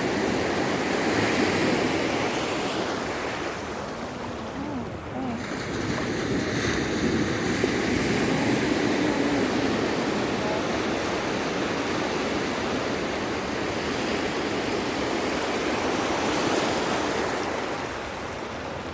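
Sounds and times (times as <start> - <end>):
sea waves washing on shore: 0.0 - 18.9.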